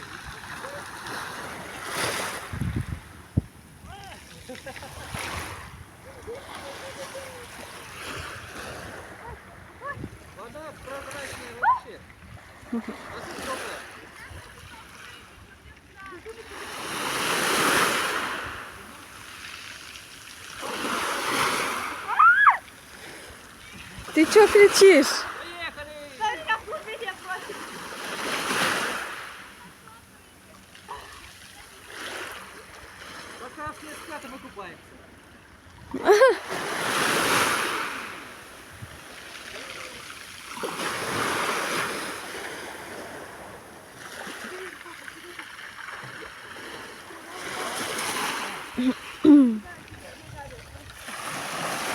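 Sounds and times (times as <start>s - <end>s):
small sea waves washing in: 0.0s - 51.9s
short high-pitched cry: 48.8s - 49.6s.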